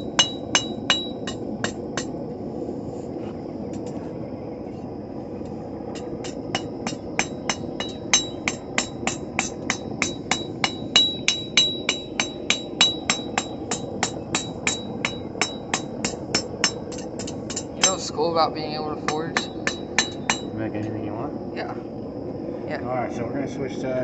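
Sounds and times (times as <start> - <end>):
anvil ringing: 0.0 - 1.4, 6.9 - 18.0, 19.1 - 20.5
hammer striking steel on anvil: 0.0 - 2.1, 6.2 - 18.0, 19.1 - 20.5
steady background rush: 0.0 - 24.0.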